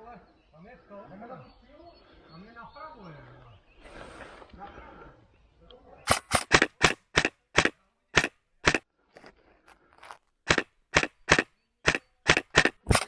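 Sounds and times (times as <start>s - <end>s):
airsoft gun shots: 6.1s - 8.8s, 10.5s - 13.0s.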